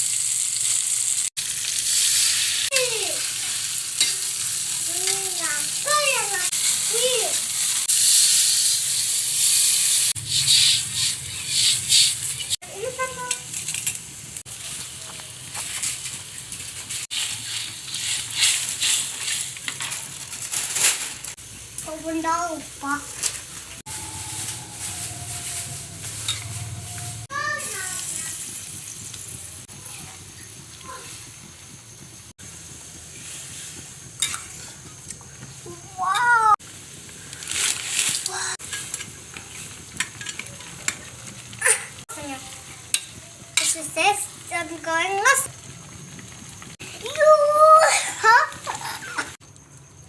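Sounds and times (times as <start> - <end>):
simmering liquid hissing: 0.0 - 12.6, 27.2 - 40.0
food sizzling in a pan: 0.0 - 50.0.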